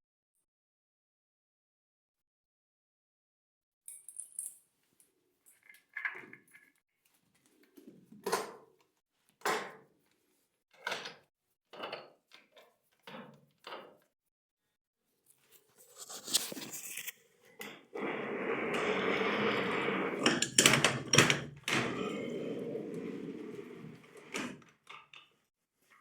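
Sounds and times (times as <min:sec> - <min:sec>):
objects clunking and rattling: 0:18.7 - 0:25.4.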